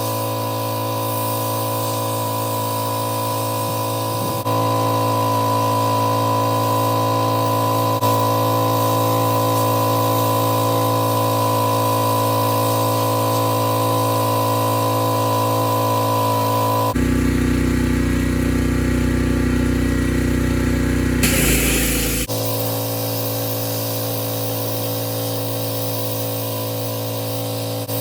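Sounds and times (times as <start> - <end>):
pressure washer motor drone: 13.9 - 22.5.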